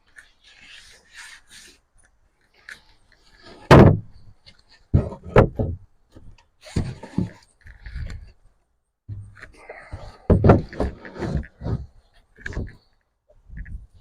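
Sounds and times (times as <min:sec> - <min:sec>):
hard knocks and thumps: 0:03.7 - 0:04.2, 0:04.9 - 0:05.8, 0:09.1 - 0:12.8.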